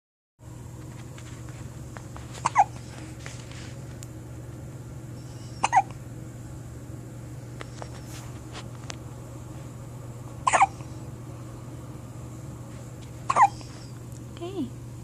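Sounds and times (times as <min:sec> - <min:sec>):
person hiccuping: 0:02.4 - 0:02.7, 0:05.6 - 0:06.0, 0:10.4 - 0:10.8, 0:13.3 - 0:13.6.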